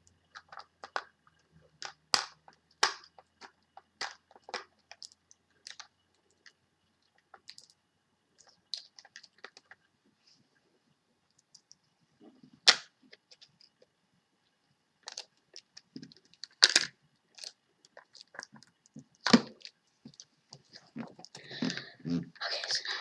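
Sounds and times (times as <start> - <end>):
package clicks and crinkles: 15.0 - 20.2.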